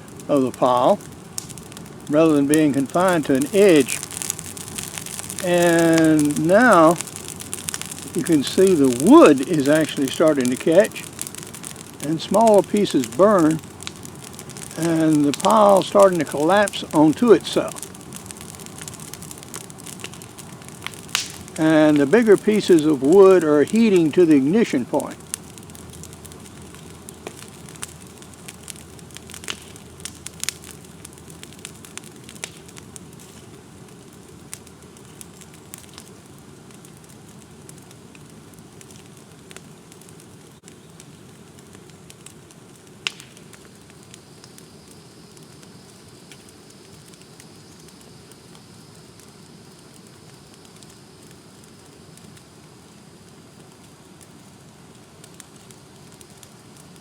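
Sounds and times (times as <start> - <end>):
low rush of flame: 0.0 - 44.7
fire crackles and pops: 0.0 - 57.0.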